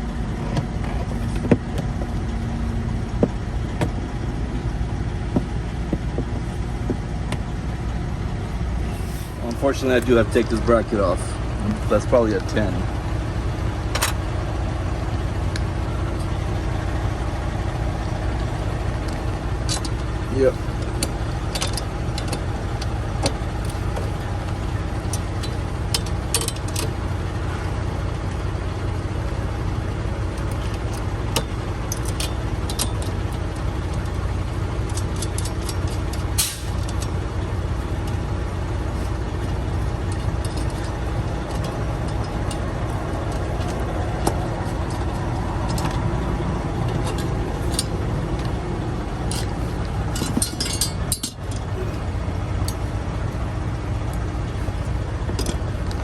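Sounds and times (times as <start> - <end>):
truck engine idling: 0.0 - 56.0
hand tools clinking on metal: 18.5 - 27.0, 30.3 - 52.9.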